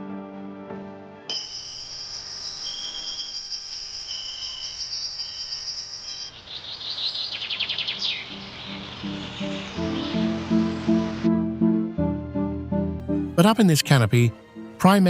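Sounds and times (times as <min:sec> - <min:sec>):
insects trilling chorus: 0:01.3 - 0:11.2
rapid pulsed chirping call: 0:01.3 - 0:11.3.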